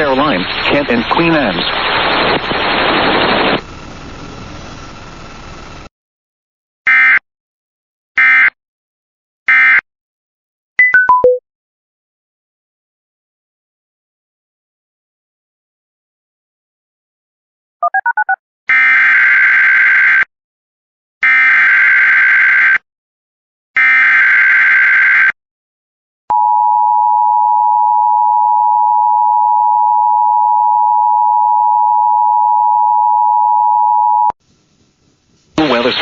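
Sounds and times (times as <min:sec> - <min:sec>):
buzzy data bursts: 0:00.0 - 0:04.2.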